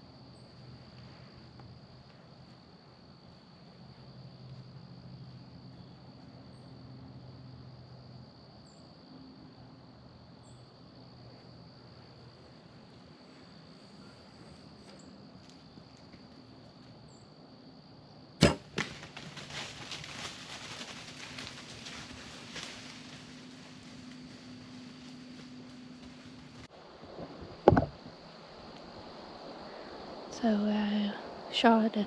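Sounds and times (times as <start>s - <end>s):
insects trilling: 0.0s - 32.0s
smack: 18.4s - 19.1s
bowstring crack and arrow hit: 18.4s - 20.4s
deer running through leaves: 18.7s - 26.7s.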